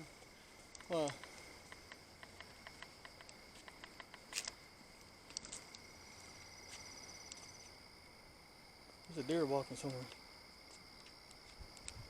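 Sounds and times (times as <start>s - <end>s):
night insects chirping: 0.0s - 12.0s
faint clicks and crackles: 0.6s - 4.6s, 9.8s - 12.0s.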